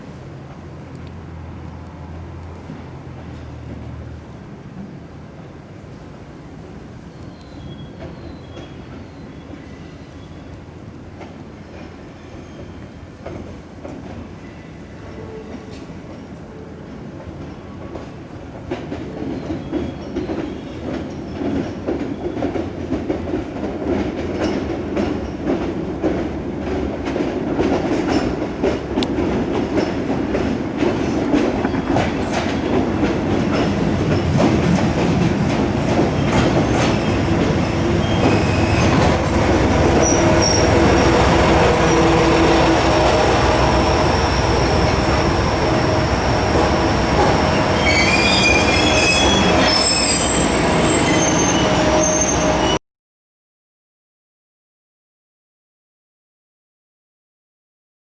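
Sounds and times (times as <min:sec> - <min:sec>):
train wheels clicking over rail joints: 0:17.4 - 0:52.7
metallic wheel squeal: 0:36.0 - 0:52.8.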